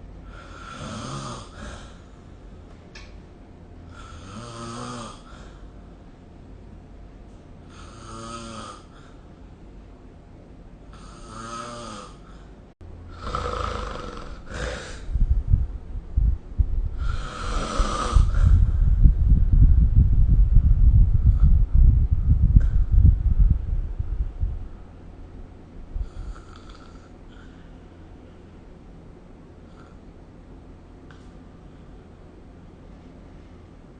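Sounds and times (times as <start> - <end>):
person snoring: 0.2 - 2.0, 3.9 - 5.6, 7.6 - 9.2, 10.9 - 12.4, 13.1 - 15.1, 16.9 - 18.8, 26.0 - 27.6
low rough rumbling: 14.9 - 26.3.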